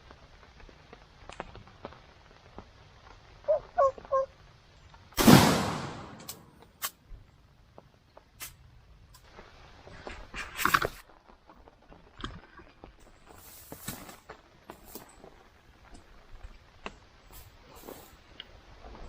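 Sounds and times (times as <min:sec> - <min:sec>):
rustling: 0:09.2 - 0:19.0.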